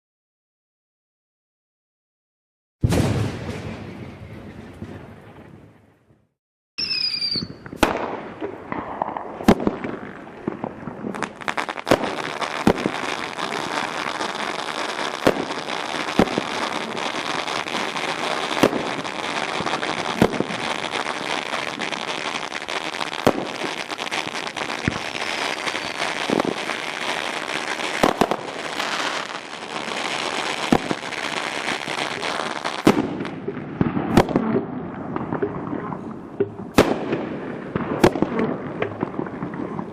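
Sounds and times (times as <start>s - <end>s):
firework bangs: 2.8s - 5.8s, 6.8s - 39.9s
firework whistle: 6.8s - 7.8s, 24.7s - 26.6s
fireworks crackling: 6.8s - 39.9s.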